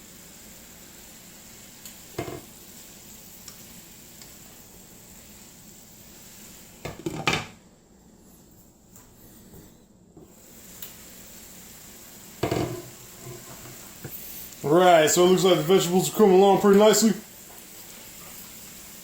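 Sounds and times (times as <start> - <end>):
vegetables sizzling in skillet: 0.0 - 7.7, 10.2 - 19.0
metal knocking on pan: 2.2 - 2.4, 12.4 - 13.4.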